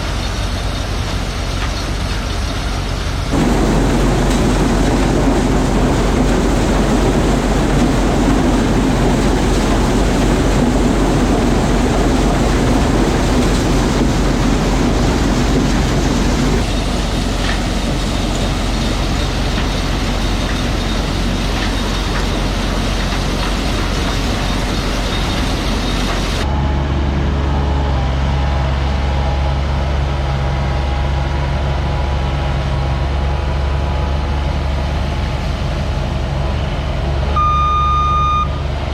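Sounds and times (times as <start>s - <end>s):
low engine drone: 0.0s - 38.9s
farm machinery rattling: 0.1s - 26.5s.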